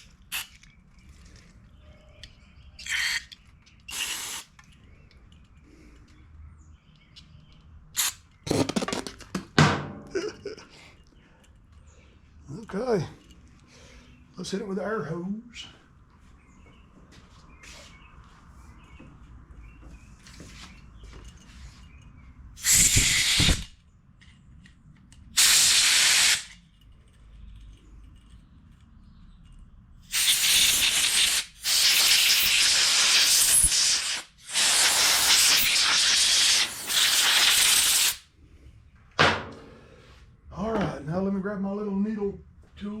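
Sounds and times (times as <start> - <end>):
compressed air blow gun hissing: 3.9 - 4.6, 22.6 - 23.7, 25.4 - 26.6, 30.1 - 38.3.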